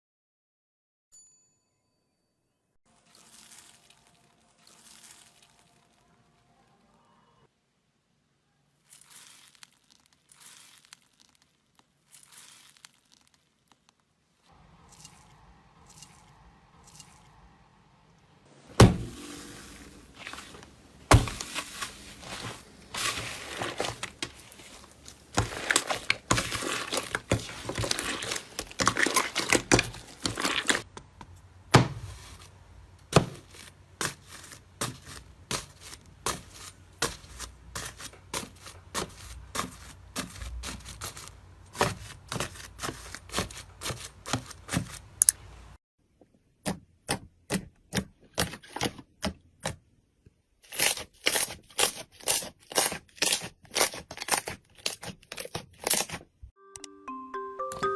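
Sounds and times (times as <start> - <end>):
slime crackling and popping: 3.0 - 6.4, 8.8 - 14.2, 22.9 - 30.9.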